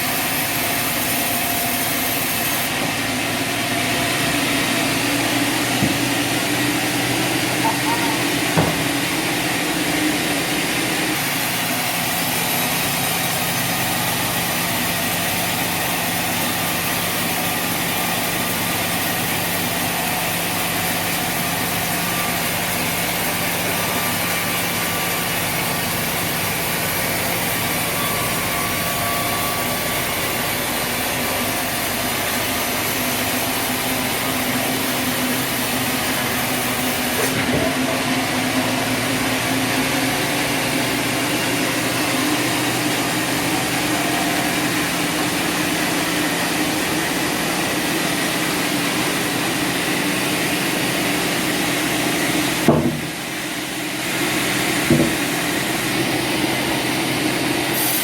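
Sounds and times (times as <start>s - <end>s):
machine running: 4.1s - 15.0s.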